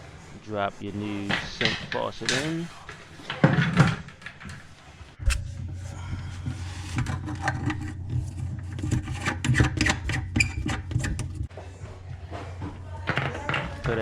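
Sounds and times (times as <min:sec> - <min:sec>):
steady low hum: 0:05.0 - 0:09.5
faucet fittings clicking and scraping: 0:06.4 - 0:11.5.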